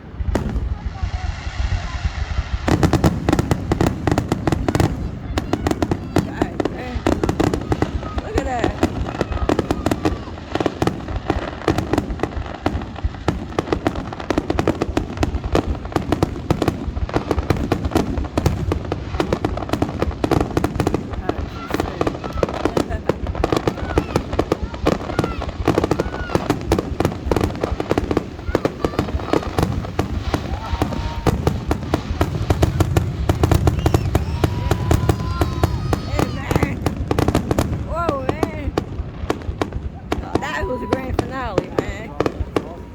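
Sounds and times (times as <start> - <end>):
fireworks bangs and cracks: 0.0 - 42.9.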